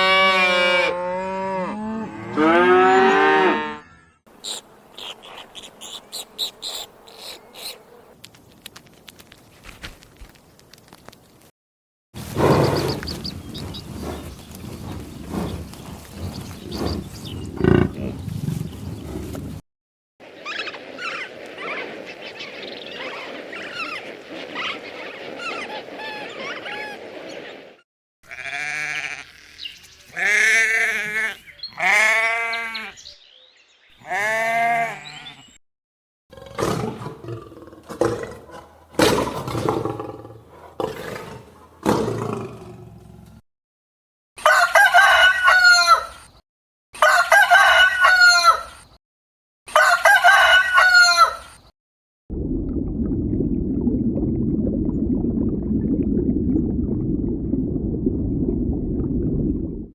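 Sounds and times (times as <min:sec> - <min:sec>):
farm animal calls: 0:12.2 - 0:19.6
rooster crowing: 0:44.4 - 0:46.1, 0:47.0 - 0:48.6, 0:49.7 - 0:51.4.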